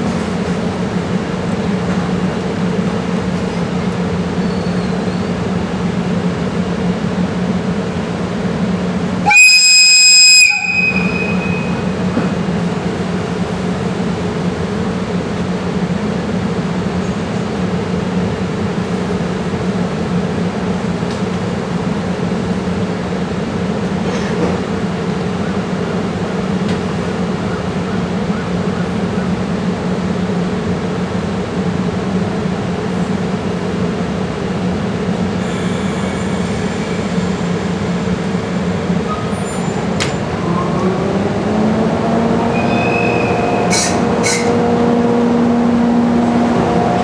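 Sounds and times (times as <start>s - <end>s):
locomotive whistle blast: 9.2s - 12.5s, 35.4s - 40.3s, 42.5s - 44.6s
steady low hum: 35.4s - 40.0s.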